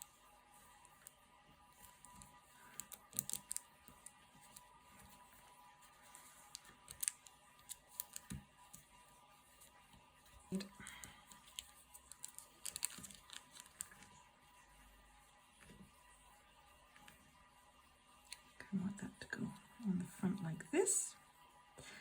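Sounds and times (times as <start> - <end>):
paper being handled: 11.3 - 14.1.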